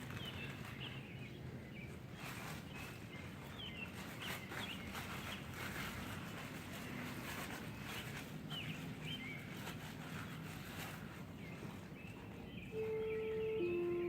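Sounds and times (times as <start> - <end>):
birds chirping: 0.0 - 14.0
steady outdoor noise: 0.0 - 14.0
outdoor warning siren: 12.7 - 14.0.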